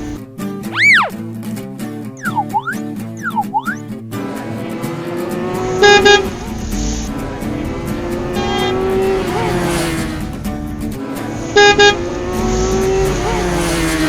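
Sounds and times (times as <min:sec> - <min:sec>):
cartoon car horn honking: 0:05.6 - 0:06.7, 0:08.2 - 0:09.9, 0:11.4 - 0:13.4.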